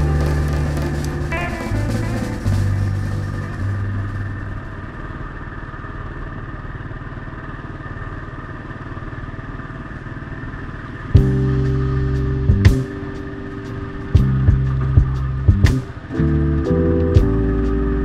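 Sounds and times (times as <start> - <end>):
loud steady low tone: 0.0 - 6.7, 10.8 - 18.0
motorcycle engine running: 0.0 - 18.0.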